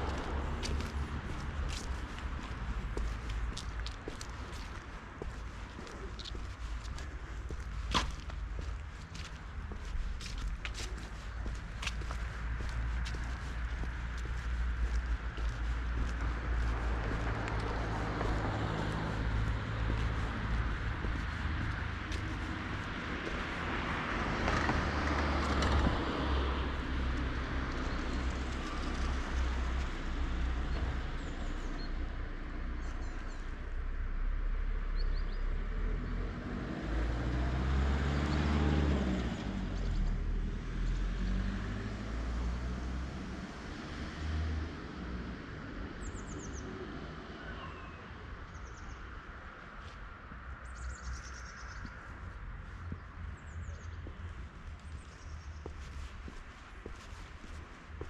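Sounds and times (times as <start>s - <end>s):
car passing: 0.0s - 31.2s, 35.8s - 47.7s
low traffic rumble: 0.0s - 58.0s
small birds chirping: 46.0s - 46.8s, 47.6s - 49.2s, 50.5s - 57.7s.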